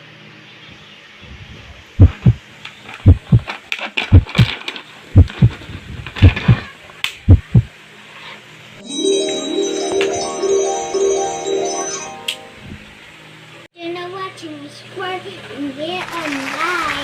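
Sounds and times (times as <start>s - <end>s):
heartbeat thumps: 2.0s - 2.4s, 3.0s - 3.5s, 4.1s - 4.5s, 5.2s - 5.6s, 6.2s - 6.7s, 7.3s - 7.7s.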